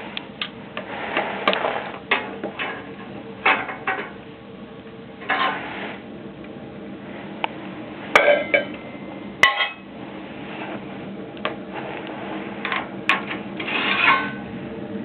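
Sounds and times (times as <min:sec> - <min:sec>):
metal scraping clatter: 0:05.2 - 0:06.0, 0:11.7 - 0:14.4
sheet metal stove clanking: 0:08.1 - 0:08.8, 0:09.4 - 0:09.9, 0:11.4 - 0:14.5.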